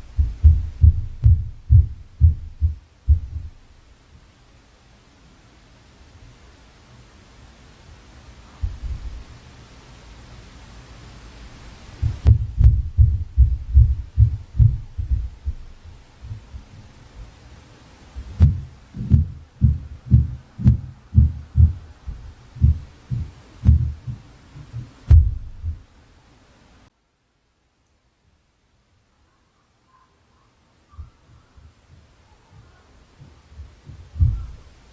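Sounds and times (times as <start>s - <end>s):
heavy footsteps through ceiling: 0.0s - 3.9s, 12.0s - 17.4s, 18.1s - 25.9s, 33.2s - 34.7s.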